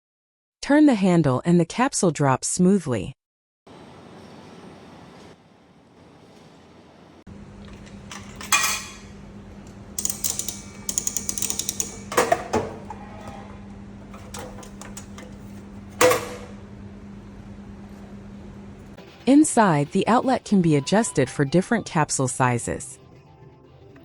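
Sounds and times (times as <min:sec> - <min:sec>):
steady low hum: 0:07.3 - 0:21.0
ratchet clicks of turning handle: 0:10.0 - 0:12.1.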